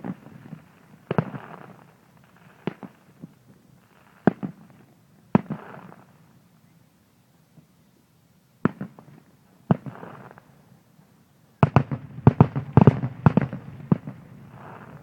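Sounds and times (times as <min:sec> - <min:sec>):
fireworks exploding: 0:00.0 - 0:06.2, 0:08.6 - 0:10.4, 0:11.6 - 0:15.0.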